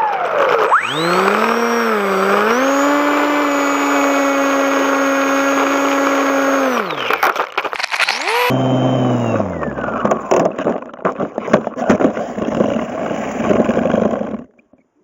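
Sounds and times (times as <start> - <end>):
rc car motor whining: 0.6 - 10.2.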